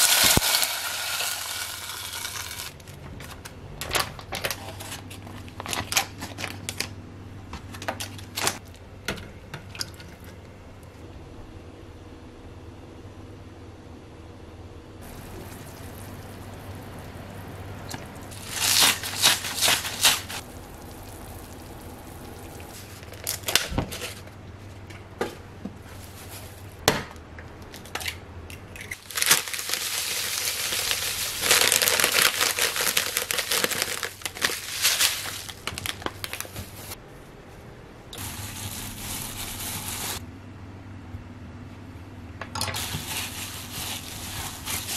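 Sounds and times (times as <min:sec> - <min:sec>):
crinkling and rustling: 0:22.7 - 0:26.8, 0:28.8 - 0:37.0, 0:42.8 - 0:44.9.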